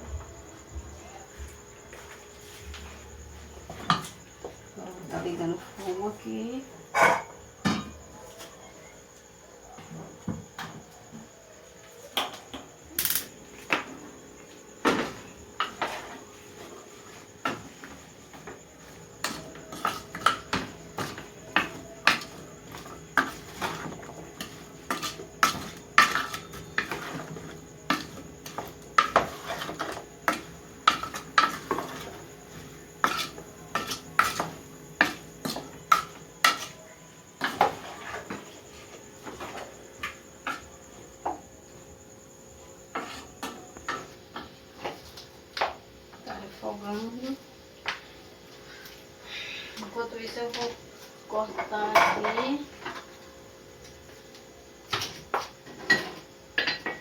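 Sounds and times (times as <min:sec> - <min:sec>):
spoon scraping a pot: 0:19.2 - 0:36.8, 0:37.4 - 0:38.4, 0:42.9 - 0:44.0.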